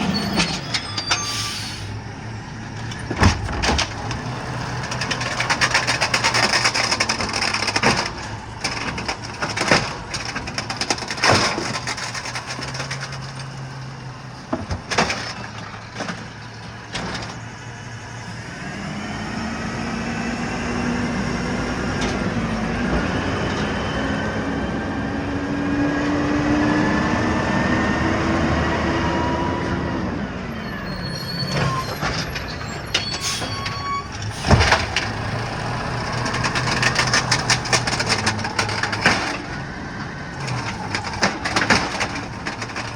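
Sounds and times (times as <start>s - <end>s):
hydraulics whine: 0.0s - 17.6s, 30.4s - 42.9s
yard waste tumbling into truck: 2.8s - 17.5s, 31.5s - 39.7s, 40.4s - 42.9s.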